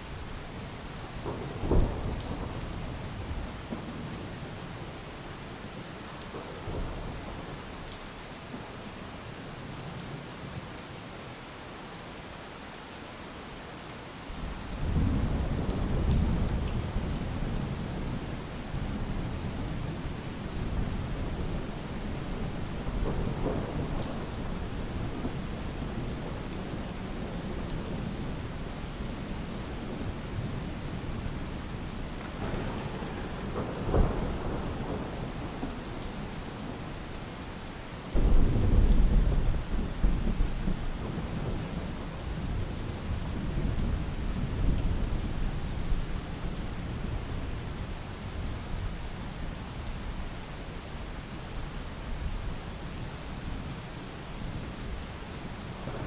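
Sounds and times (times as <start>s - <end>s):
steady rain: 0.0s - 56.0s
low thunder rumble: 14.8s - 31.3s, 32.0s - 36.9s, 38.2s - 46.1s
thunder crack: 32.2s - 35.8s.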